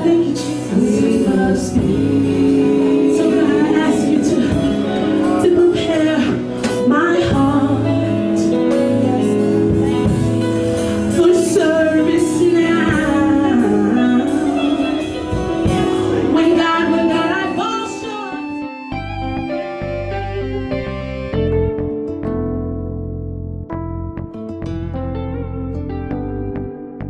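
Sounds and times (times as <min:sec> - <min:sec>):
gospel singers: 0:00.0 - 0:19.7
guitar: 0:00.0 - 0:27.0.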